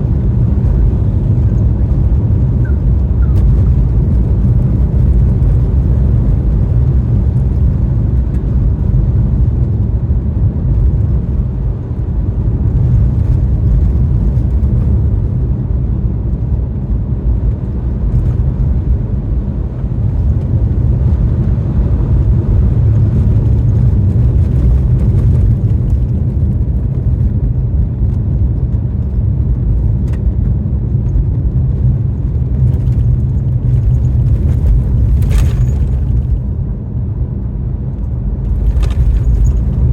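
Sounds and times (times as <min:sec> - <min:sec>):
car driving on snowy road: 0:00.0 - 0:39.9.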